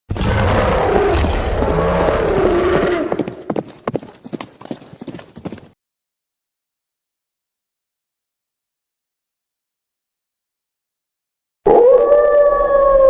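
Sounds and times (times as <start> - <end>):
hooves clip-clopping: 0.2 - 5.8.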